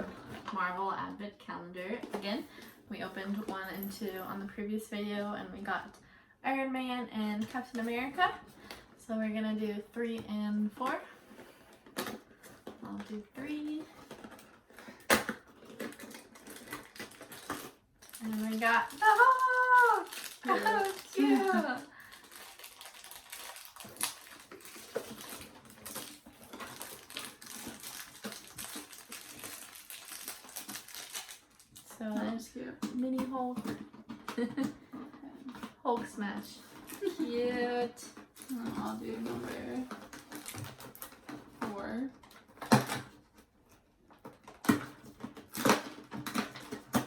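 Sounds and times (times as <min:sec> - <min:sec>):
toy and cardboard handling: 0:10.0 - 0:47.0
packaging rustles and scrapes: 0:10.8 - 0:47.0.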